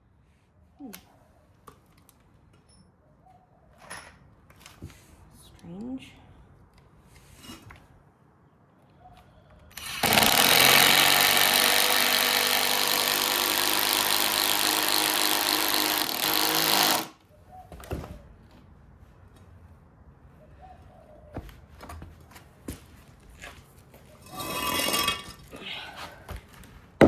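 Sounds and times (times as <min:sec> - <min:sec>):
power drill drilling into timber: 0:09.7 - 0:17.2.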